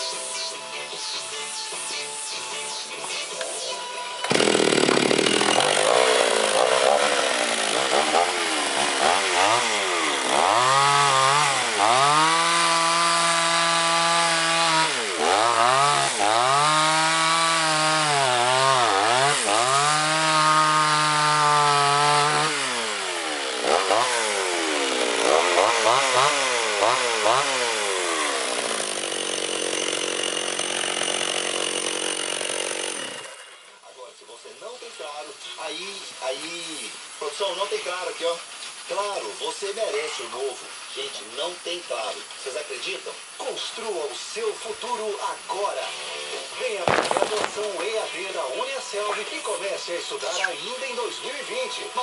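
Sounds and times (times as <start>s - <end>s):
chainsaw cutting wood: 3.0s - 33.8s, 45.0s - 48.6s
person talking: 46.7s - 52.0s.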